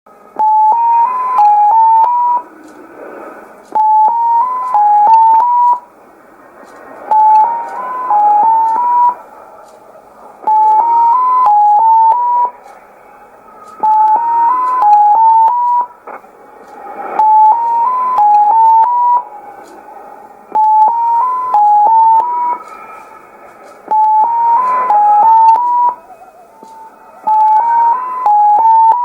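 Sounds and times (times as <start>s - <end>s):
radio static: 0.7s - 29.0s
short beeping tones: 3.8s - 5.8s, 7.1s - 9.2s, 10.4s - 12.6s, 13.8s - 15.9s, 17.2s - 19.3s, 20.5s - 22.6s, 23.9s - 26.1s, 27.3s - 29.0s.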